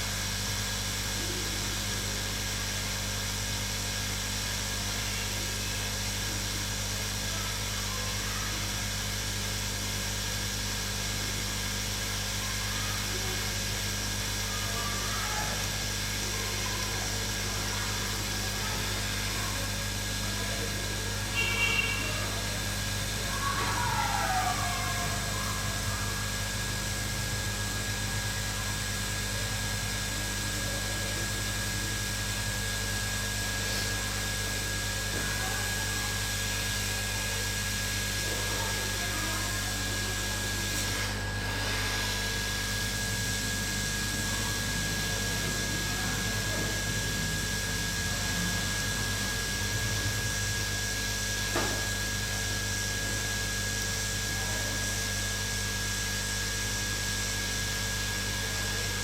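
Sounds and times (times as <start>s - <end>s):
hot air blower: 0.0s - 59.0s
thin steady whine: 10.9s - 56.0s.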